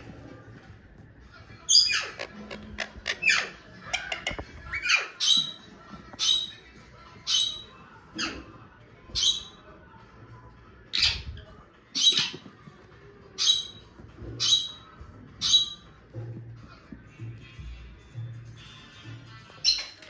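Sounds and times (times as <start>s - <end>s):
parrot squawking: 1.7s - 5.6s, 6.2s - 6.6s, 7.2s - 8.4s, 10.9s - 11.3s, 12.0s - 12.4s, 13.4s - 13.8s, 14.4s - 14.8s, 15.4s - 15.8s, 19.6s - 20.0s.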